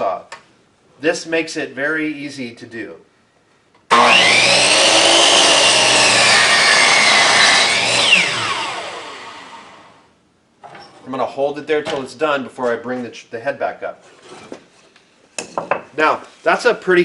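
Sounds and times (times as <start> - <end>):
miter saw cutting board: 3.9 - 9.9
saw blade winding down: 3.9 - 10.0.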